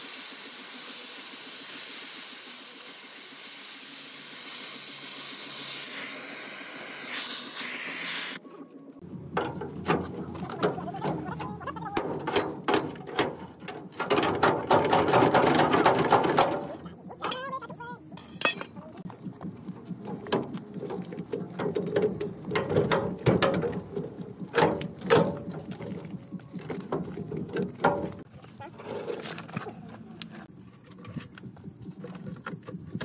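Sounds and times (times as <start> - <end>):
metal tools clattering: 9.3 - 17.5, 18.2 - 18.9
sharp metal knocks: 12.0 - 17.4.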